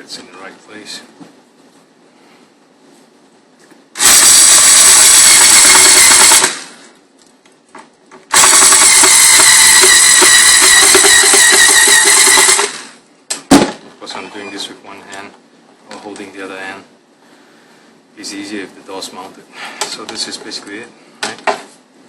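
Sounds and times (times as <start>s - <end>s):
power screwdriver motor: 4.0s - 6.8s, 8.3s - 13.0s.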